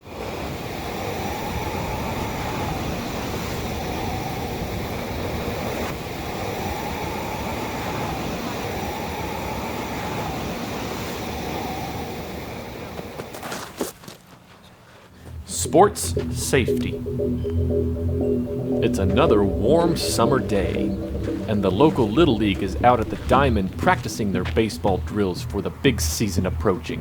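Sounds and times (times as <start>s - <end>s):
faint high tone: 15.3s - 26.0s.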